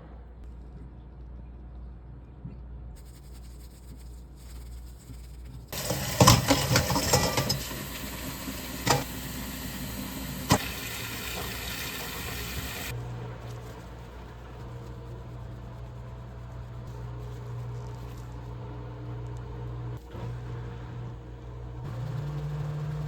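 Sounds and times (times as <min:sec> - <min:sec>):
low steady hum: 0:00.0 - 0:23.0
metal utensils clinking: 0:05.8 - 0:08.0, 0:08.7 - 0:09.1
tap running into a sink: 0:05.8 - 0:12.9.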